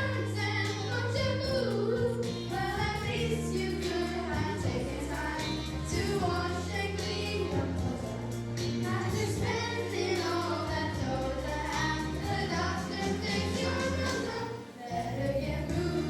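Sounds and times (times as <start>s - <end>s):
backing track with bass line: 0.0s - 14.5s, 15.2s - 16.0s
children singing: 0.0s - 16.0s.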